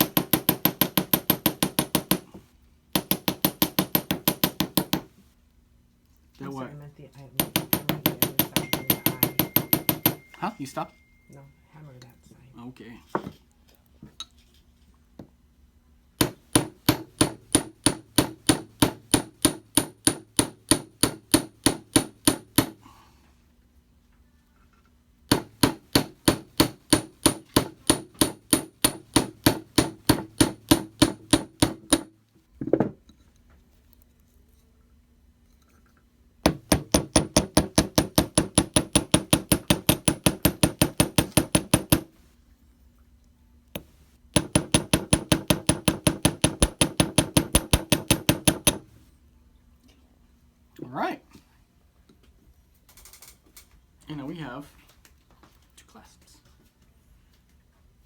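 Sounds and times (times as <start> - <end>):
hammer tapping wire on metal block: 0.0 - 5.1, 7.3 - 10.5, 16.2 - 22.8, 25.3 - 32.1, 36.4 - 42.1, 43.8 - 48.9.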